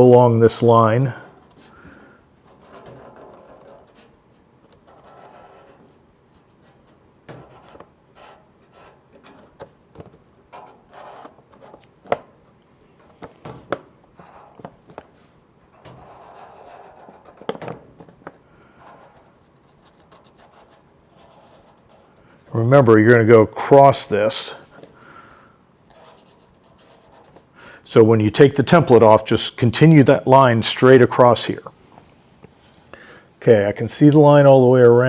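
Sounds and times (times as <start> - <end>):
marker scratching on sheet metal: 2.4 - 9.7, 10.5 - 11.9, 15.7 - 17.6, 25.9 - 27.4.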